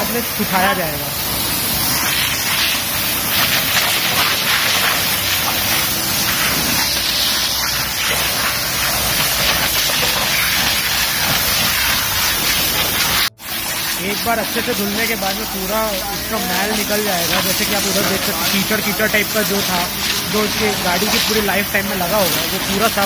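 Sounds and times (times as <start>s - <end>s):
pressure washer spraying: 0.0s - 23.0s.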